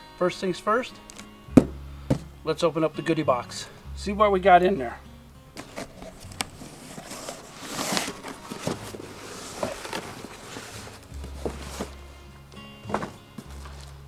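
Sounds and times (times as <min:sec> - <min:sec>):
cardboard rustle: 0:05.6 - 0:12.2, 0:12.8 - 0:14.0.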